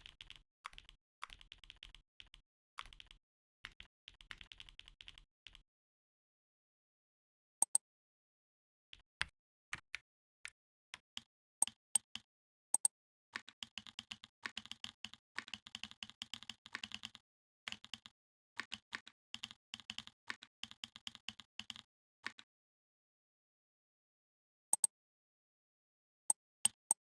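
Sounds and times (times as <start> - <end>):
keyboard typing clicks: 12.8 - 22.5.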